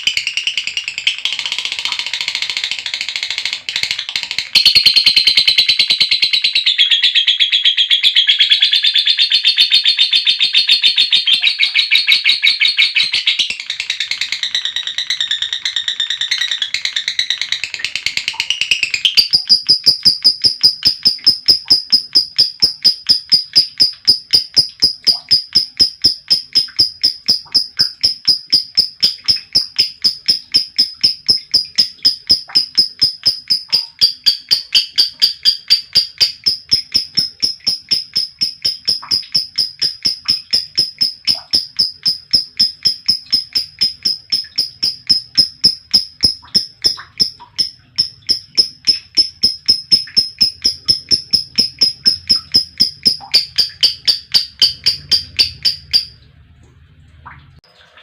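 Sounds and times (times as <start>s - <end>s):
lovebird shrill chirps: 18.6s - 56.2s.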